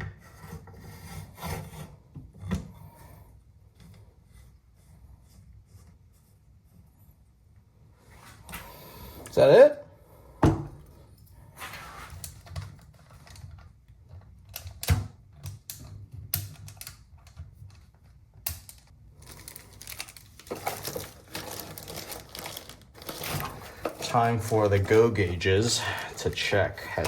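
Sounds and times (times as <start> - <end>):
small parts and tools clicking: 14.4 - 24.2
rustling: 18.8 - 27.0.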